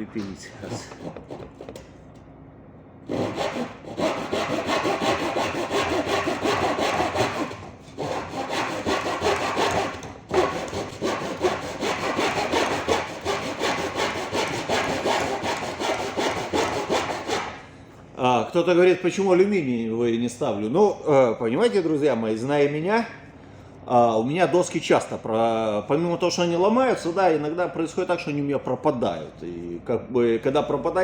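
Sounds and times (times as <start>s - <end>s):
hand saw cutting wood: 0.8s - 1.7s, 3.1s - 17.6s.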